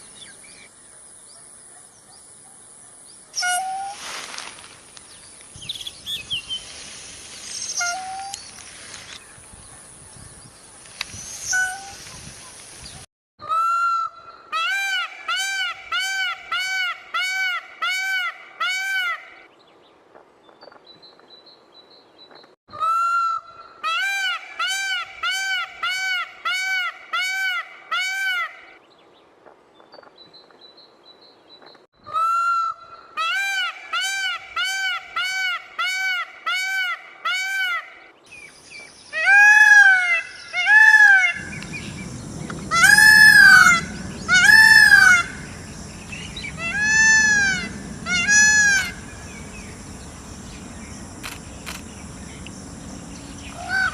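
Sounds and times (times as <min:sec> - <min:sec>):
peafowl nasal honks: 0:39.3 - 0:50.8, 0:53.4 - 0:53.9.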